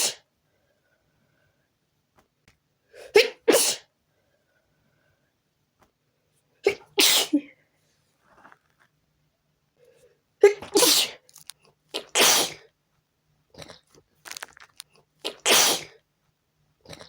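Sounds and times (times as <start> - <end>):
person sneezing: 0.0 - 0.3, 2.9 - 3.9, 6.6 - 7.6, 10.4 - 11.3, 11.9 - 12.7, 15.2 - 16.0.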